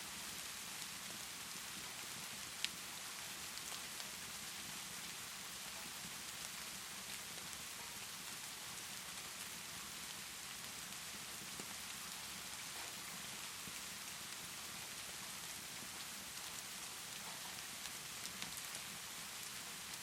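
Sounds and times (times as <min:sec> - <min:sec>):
steady rainfall: 0:00.0 - 0:20.0
faint ticks and pops: 0:11.4 - 0:20.0.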